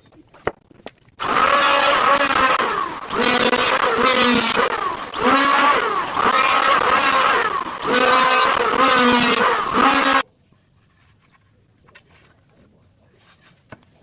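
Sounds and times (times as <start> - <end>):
power tool motor whining: 1.2 - 10.2.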